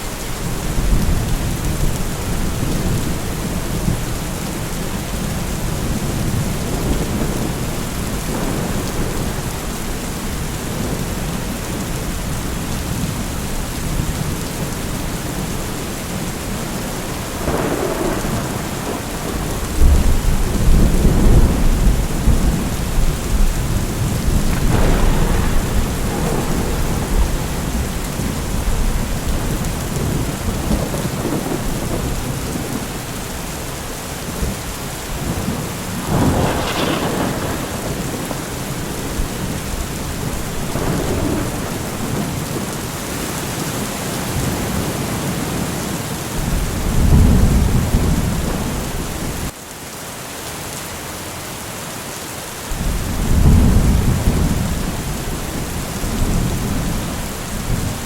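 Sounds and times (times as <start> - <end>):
heavy rain: 0.0 - 58.0
rolling thunder: 0.4 - 49.5, 52.7 - 58.0
sharp thunderclap: 17.2 - 33.1, 35.2 - 42.9, 46.4 - 49.5, 52.7 - 58.0.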